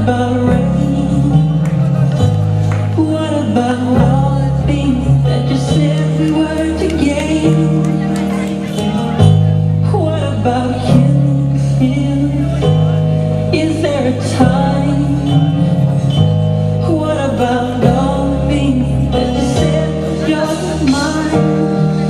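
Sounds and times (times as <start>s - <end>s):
pop dance music with singing: 0.0s - 22.0s.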